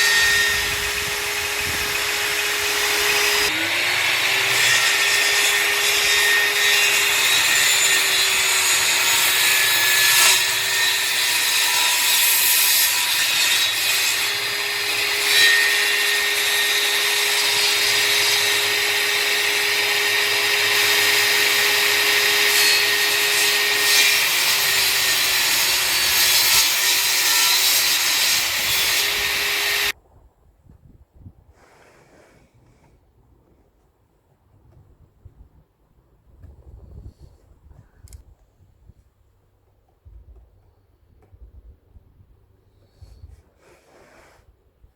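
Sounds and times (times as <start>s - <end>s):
table saw cutting wood: 0.0s - 30.0s.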